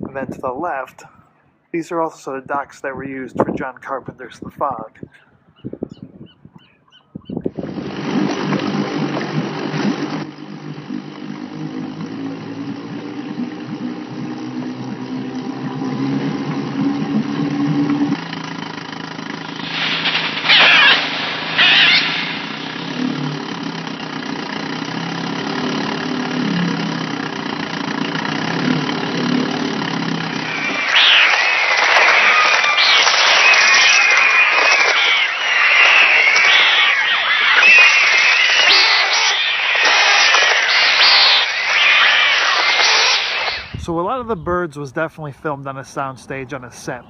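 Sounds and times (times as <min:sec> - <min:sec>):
engine running: 0:07.5 - 0:47.0
short loud high-pitched sounds: 0:19.4 - 0:23.0.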